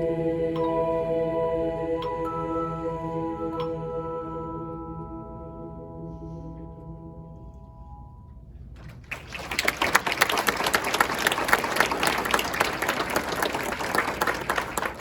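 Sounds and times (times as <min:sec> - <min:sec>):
audience applauding: 0:08.9 - 0:15.0.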